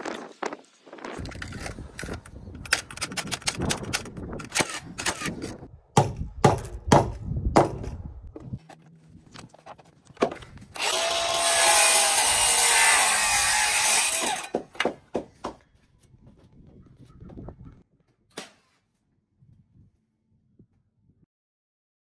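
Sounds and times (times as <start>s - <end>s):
hammer knocking on wood: 6.0s - 8.0s, 14.5s - 15.6s
power saw cutting wood: 10.8s - 14.7s.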